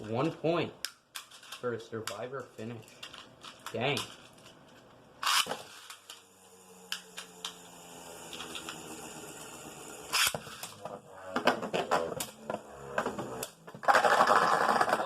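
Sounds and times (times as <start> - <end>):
ripcord launch rasp: 5.2 - 6.0, 10.1 - 10.8.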